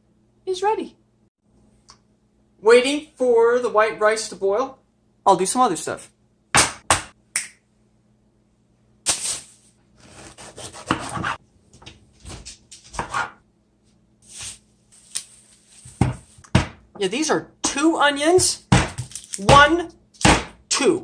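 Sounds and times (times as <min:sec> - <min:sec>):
kitchen items rustling and knocking: 0:11.0 - 0:13.4, 0:14.2 - 0:16.9, 0:18.3 - 0:19.8.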